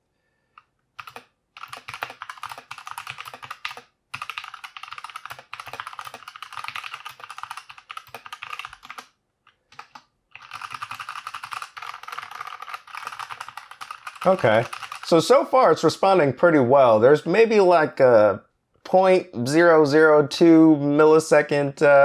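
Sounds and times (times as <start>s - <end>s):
fast typing on mechanical keyboard: 1.0s - 15.3s.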